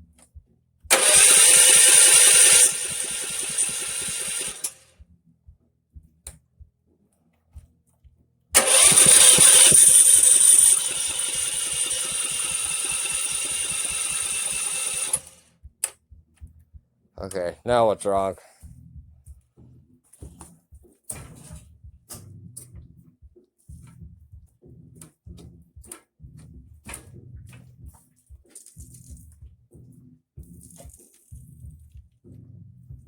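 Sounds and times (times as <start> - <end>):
small engine starting and stalling: 0.9 - 4.9, 8.6 - 15.4.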